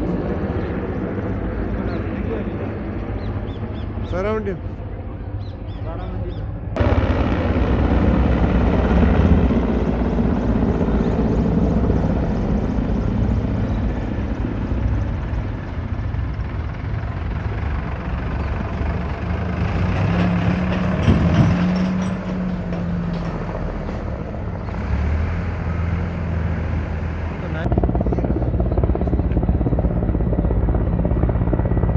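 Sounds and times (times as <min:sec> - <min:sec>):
helicopter engine and rotor: 0:00.0 - 0:31.9.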